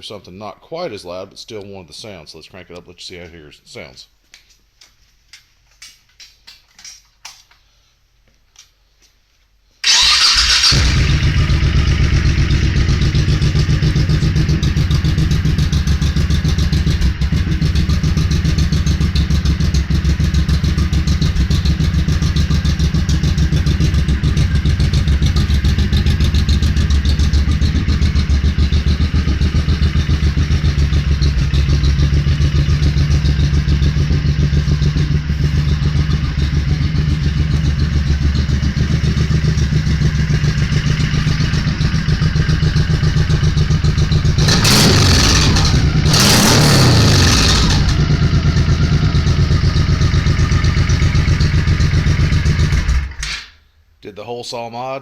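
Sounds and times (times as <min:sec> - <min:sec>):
motorcycle engine starting and idling: 0:09.8 - 0:53.5.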